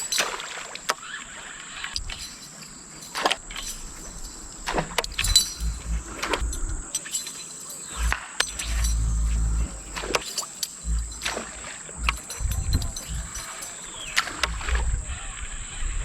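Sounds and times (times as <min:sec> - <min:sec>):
clinks and knocks of gear: 0:01.9 - 0:14.9
wind rumble on microphone: 0:03.6 - 0:06.9, 0:10.8 - 0:16.0.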